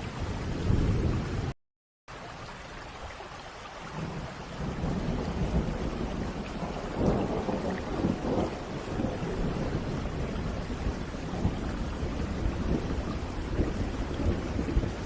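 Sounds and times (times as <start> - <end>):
steady rain: 0.0 - 15.0
rolling thunder: 4.0 - 15.0.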